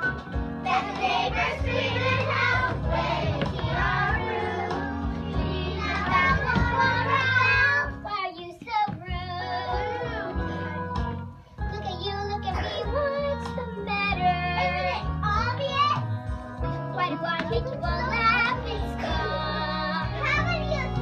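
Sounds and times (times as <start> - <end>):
musical accompaniment: 0.0 - 21.0
children singing: 0.6 - 8.0, 18.3 - 21.0.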